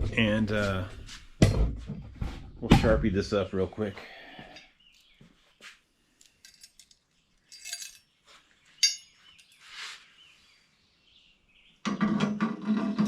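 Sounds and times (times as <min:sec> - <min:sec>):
small metal parts clinking: 0:06.2 - 0:08.1
soft rustles: 0:07.5 - 0:10.6.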